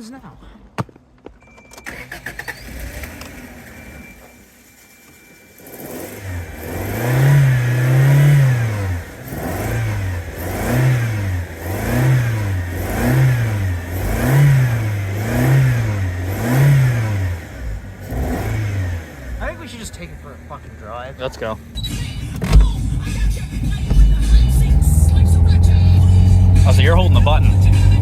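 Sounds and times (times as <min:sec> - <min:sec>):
car engine revving: 0:01.9 - 0:04.6, 0:05.6 - 0:28.0.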